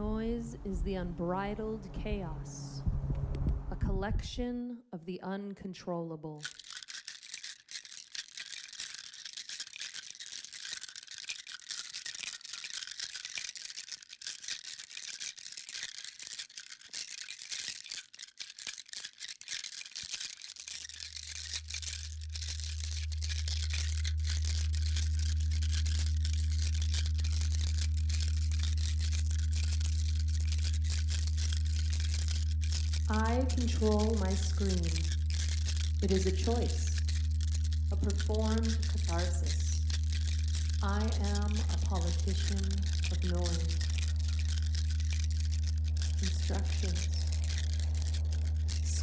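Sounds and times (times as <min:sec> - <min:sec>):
steady low hum: 0:00.0 - 0:04.4, 0:20.9 - 0:49.0
dense crackling hiss: 0:06.4 - 0:49.0.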